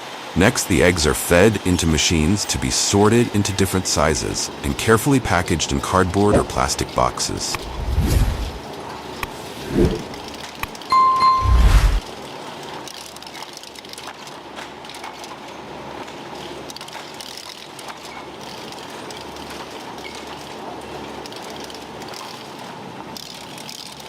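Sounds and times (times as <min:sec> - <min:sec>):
short high beep: 0:10.8 - 0:12.0.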